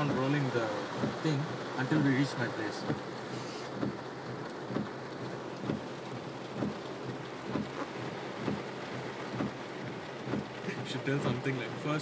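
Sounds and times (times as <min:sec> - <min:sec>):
water noise heard inside a car: 0:00.0 - 0:12.0
low repeating thump: 0:03.7 - 0:04.0, 0:04.7 - 0:05.0, 0:05.6 - 0:09.6, 0:10.2 - 0:10.6.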